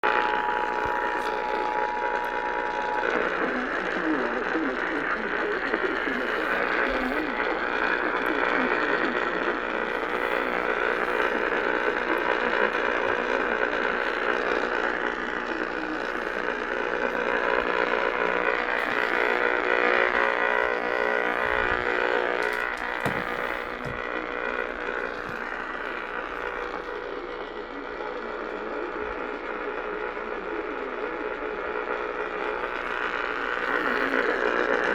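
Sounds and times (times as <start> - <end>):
buzzy two-tone attention signal: 0.0 - 27.4.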